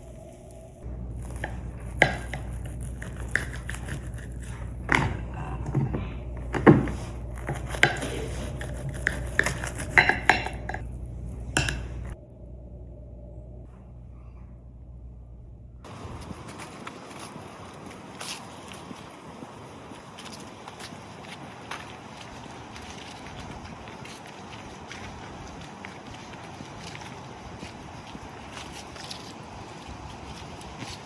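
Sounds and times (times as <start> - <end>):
steady low hum: 0.0 - 31.0
dishes and cutlery clinking: 4.9 - 10.9, 11.6 - 12.2.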